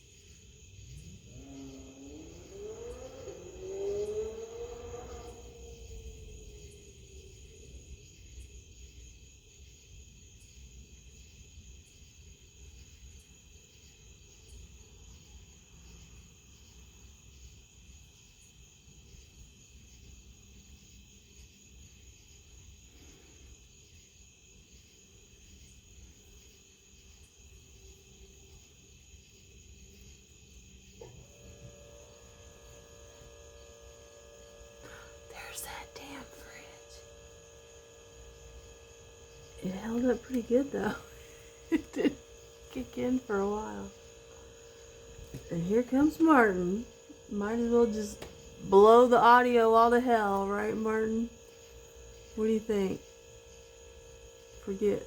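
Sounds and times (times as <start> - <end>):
pulsing high-pitched chirring: 0.0 - 55.0
refrigerator compressor hum: 25.2 - 55.0.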